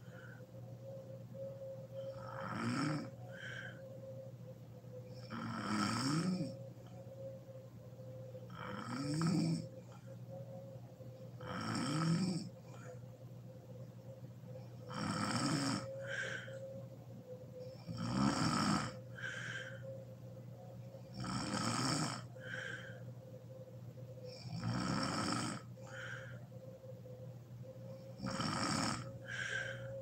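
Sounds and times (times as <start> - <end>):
faint breath sound: 0.0 - 2.4, 3.1 - 5.2, 15.8 - 18.0, 18.9 - 21.2, 22.2 - 24.6, 25.6 - 28.3, 29.0 - 30.0
faint steady hum: 0.0 - 30.0
woman snoring: 2.0 - 3.9, 5.1 - 6.7, 8.4 - 10.0, 11.4 - 13.0, 14.8 - 16.6, 17.6 - 19.9, 21.1 - 23.1, 24.3 - 26.4, 27.9 - 30.0.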